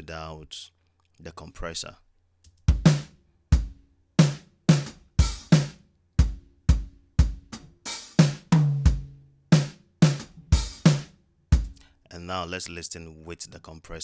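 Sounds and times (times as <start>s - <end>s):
drum kit beat: 2.6s - 11.8s.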